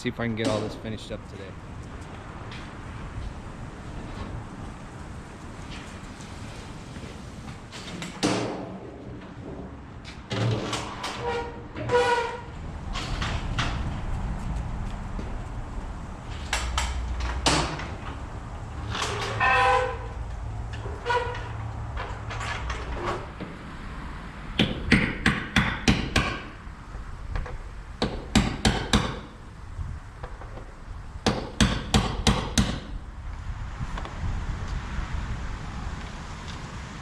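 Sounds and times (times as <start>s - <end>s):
high-pitched metallic squeals: 11.1s - 12.6s, 18.9s - 20.2s, 21.0s - 21.6s.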